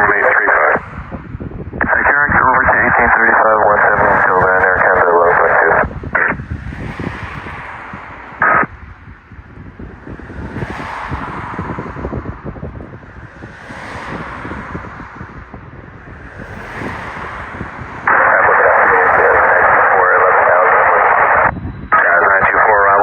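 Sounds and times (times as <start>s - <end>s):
radio receiver hiss: 0.0s - 0.8s, 1.8s - 6.4s, 8.4s - 8.7s, 18.1s - 23.0s
tinny radio static burst: 0.0s - 0.8s, 1.8s - 6.4s, 8.4s - 8.7s, 18.0s - 23.0s.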